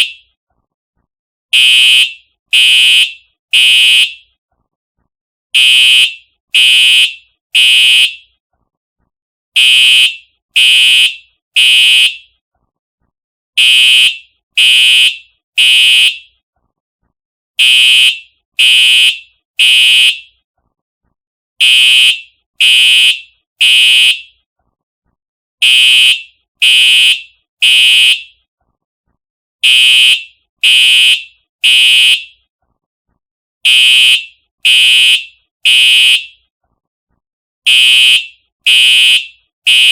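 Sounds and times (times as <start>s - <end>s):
fire alarm horn blasts: 0.0s - 0.2s, 1.5s - 4.3s, 5.6s - 8.3s, 9.6s - 12.4s, 13.6s - 16.4s, 17.6s - 20.4s, 21.6s - 24.4s, 25.6s - 28.4s, 29.6s - 32.4s, 33.6s - 36.4s, 37.7s - 39.9s.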